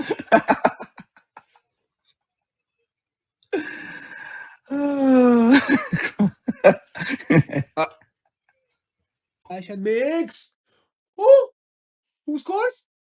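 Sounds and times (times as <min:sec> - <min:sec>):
breathy noise: 0:03.5 - 0:05.6.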